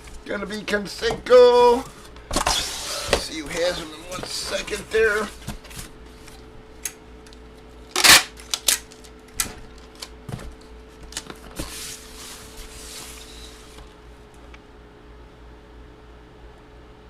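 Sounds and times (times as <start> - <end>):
faint steady hum: 0.0 - 17.0
loud scrape: 2.4 - 4.8.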